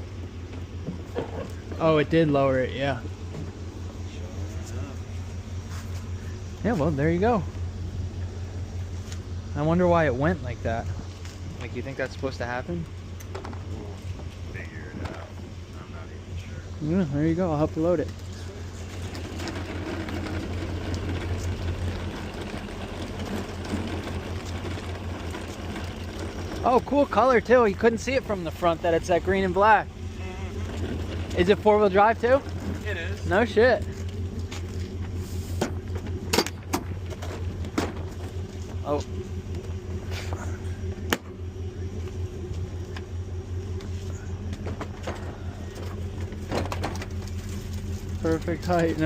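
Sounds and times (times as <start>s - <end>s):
low mechanical hum: 0.0s - 49.0s
vehicle engine idling: 0.0s - 49.0s.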